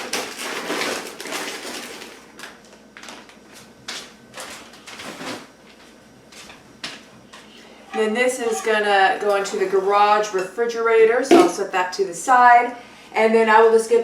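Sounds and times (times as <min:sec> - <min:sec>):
clunks and knocks of pot: 0:11.3 - 0:11.6.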